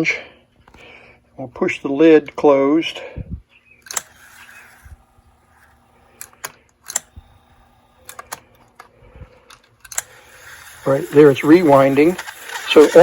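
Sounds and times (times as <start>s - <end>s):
faint hum: 0.0s - 13.0s
sharp clicks and small knocks: 3.8s - 4.6s, 5.6s - 7.2s, 8.0s - 10.1s.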